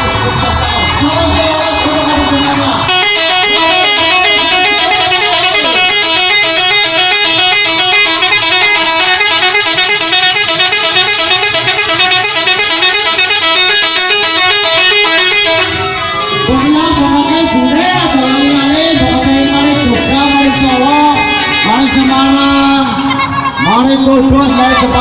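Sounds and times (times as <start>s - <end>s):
multi-tone bus horn melody: 0.0s - 25.0s.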